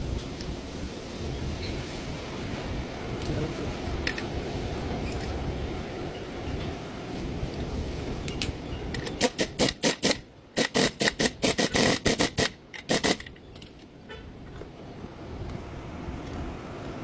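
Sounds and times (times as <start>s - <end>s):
power tool short bursts: 9.2s - 13.2s.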